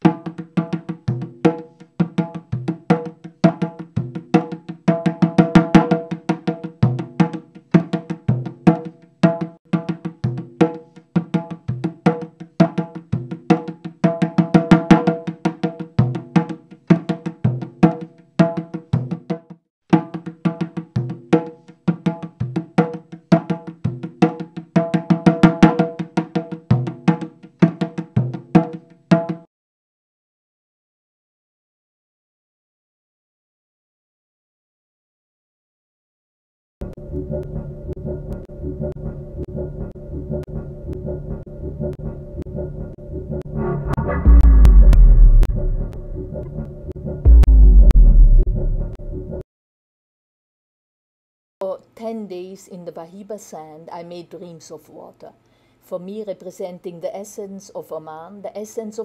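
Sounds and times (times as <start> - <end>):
fast drum strokes: 0.0 - 29.4, 43.7 - 46.2, 47.3 - 49.0
pitched percussion music: 43.8 - 46.6, 47.2 - 49.1.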